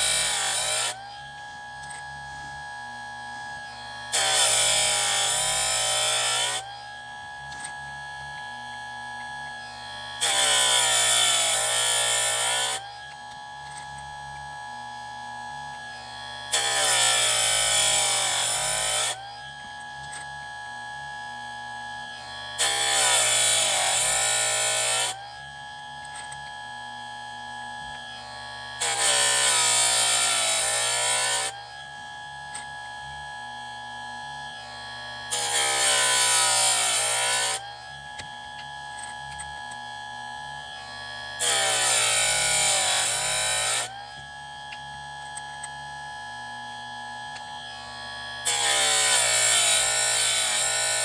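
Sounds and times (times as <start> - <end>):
chainsaw sharpener motor whine: 0.0 - 51.0
grinding wheel on chain: 4.1 - 6.6, 10.2 - 12.8, 16.5 - 19.2, 41.4 - 44.0.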